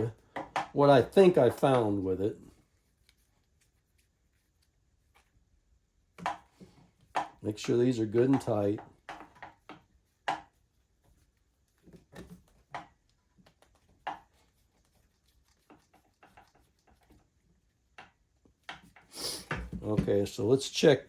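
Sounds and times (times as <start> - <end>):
light clicks and taps: 6.1 - 10.6.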